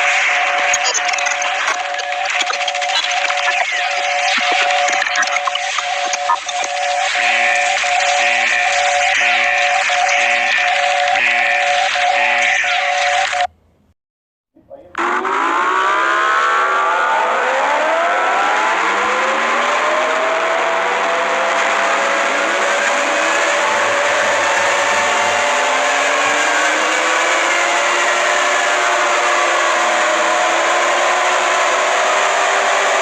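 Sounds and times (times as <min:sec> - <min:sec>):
sliding alarm tones: 0:00.0 - 0:13.5.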